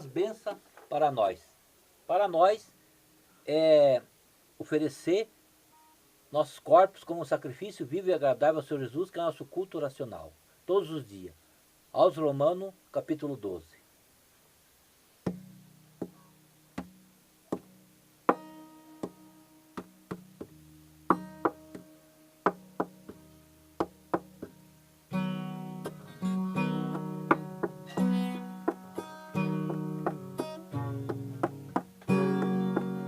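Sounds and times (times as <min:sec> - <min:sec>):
acoustic guitar playing: 0:05.7 - 0:06.1, 0:15.2 - 0:33.0.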